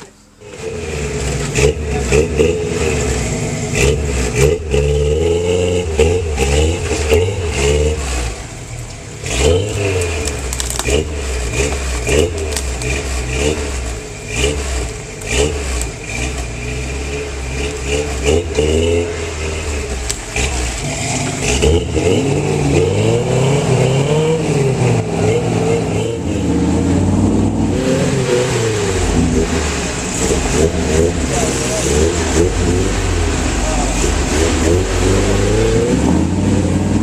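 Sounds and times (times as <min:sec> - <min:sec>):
truck engine revving: 0:00.0 - 0:37.0.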